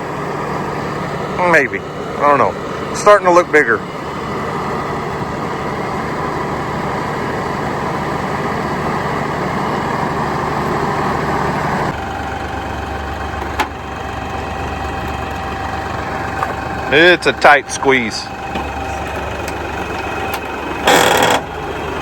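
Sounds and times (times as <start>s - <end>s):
tractor diesel engine running: 0.0s - 22.0s.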